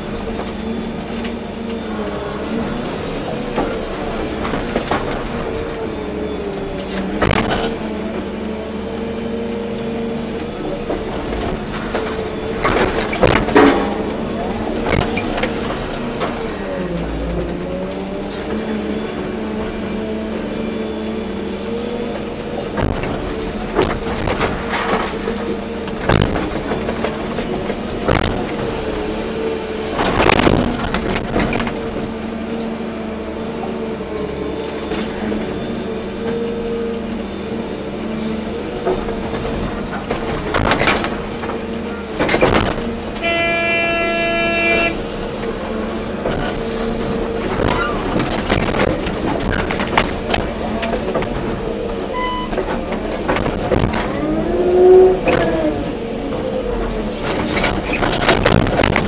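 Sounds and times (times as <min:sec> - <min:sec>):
excavator diesel engine running: 0:00.0 - 0:59.0
sharp knocks and thuds: 0:10.8 - 0:16.4, 0:22.6 - 0:28.9, 0:46.2 - 0:51.6, 0:57.2 - 0:59.0
horn sounding: 0:43.1 - 0:45.5.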